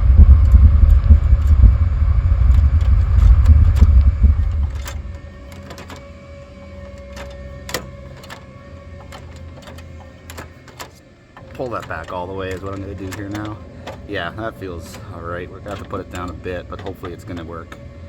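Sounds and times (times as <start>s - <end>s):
loud low rumble: 0.0s - 6.7s
faint steady hum: 0.0s - 18.0s
light clicks: 0.0s - 18.0s.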